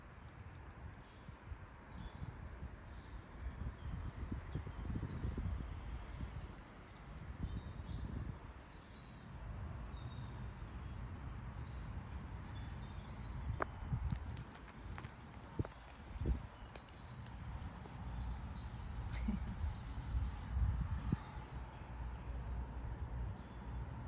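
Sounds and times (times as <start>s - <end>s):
small birds chirping: 9.8s - 20.8s
sharp clicks: 13.6s - 18.0s.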